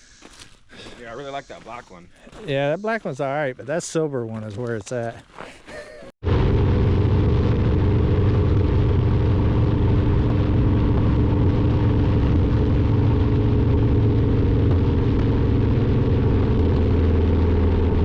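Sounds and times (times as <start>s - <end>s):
rushing wind: 6.2s - 18.0s
motorcycle engine running: 6.3s - 18.0s.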